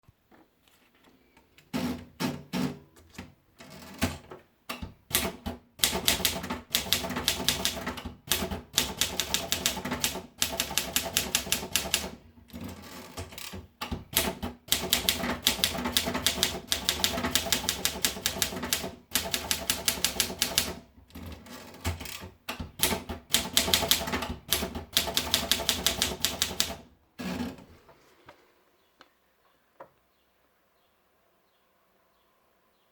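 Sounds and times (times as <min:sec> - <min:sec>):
typewriter keystrokes: 0:03.8 - 0:26.9.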